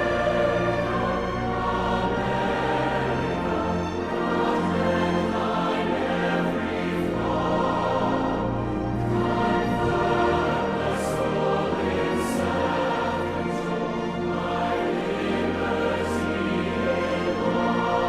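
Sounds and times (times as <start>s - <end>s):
choir singing sustained notes: 0.0s - 18.0s
orchestra: 0.0s - 18.0s.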